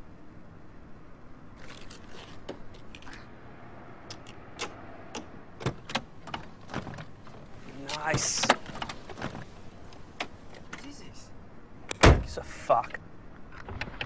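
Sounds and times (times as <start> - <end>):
faint steady background noise: 0.0 - 14.0
sharp irregular clicks and knocks: 4.1 - 10.9.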